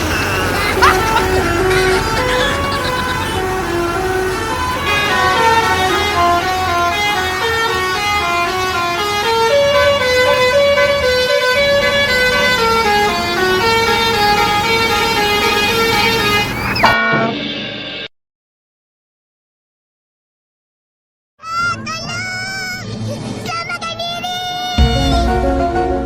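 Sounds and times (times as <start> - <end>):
multi-tone bus horn tune: 0.0 - 17.5.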